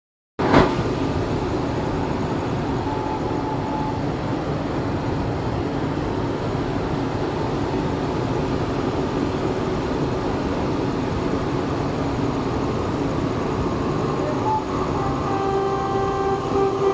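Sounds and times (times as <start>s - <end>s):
train rolling: 0.4s - 16.9s
faint held tones: 1.5s - 4.3s, 12.5s - 16.9s.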